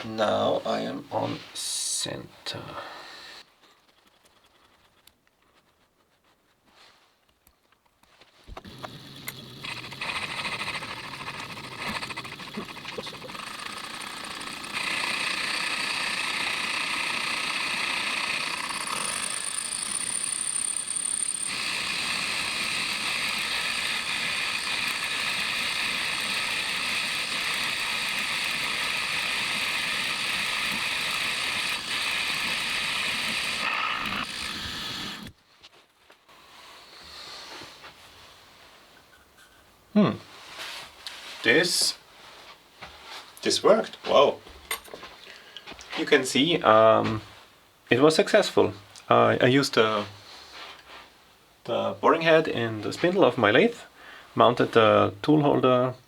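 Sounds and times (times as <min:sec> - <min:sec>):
metal lathe cutting whine: 0:08.8 - 0:35.3.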